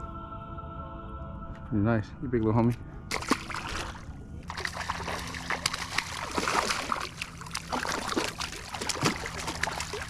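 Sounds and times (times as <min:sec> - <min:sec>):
low steady hum: 0:00.0 - 0:10.0
water splashing and trickling: 0:03.1 - 0:10.0.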